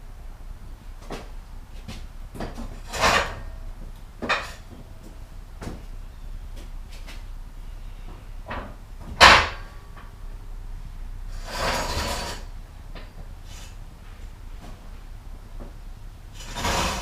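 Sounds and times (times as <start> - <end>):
scraping or rattling: 2.6 - 3.6, 11.3 - 13.8, 16.3 - 17.0.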